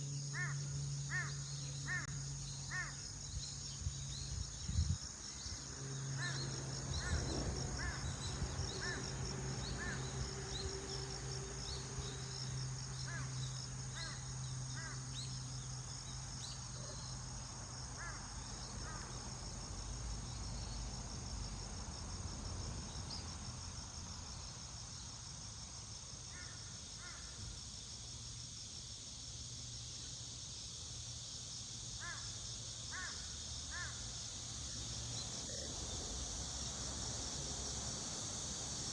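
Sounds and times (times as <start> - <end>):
high insect chorus: 0.0 - 38.9
crows cawing: 0.4 - 2.1, 2.7 - 3.0, 7.8 - 8.0, 8.8 - 9.0, 14.0 - 14.2, 18.0 - 19.1, 32.9 - 34.0.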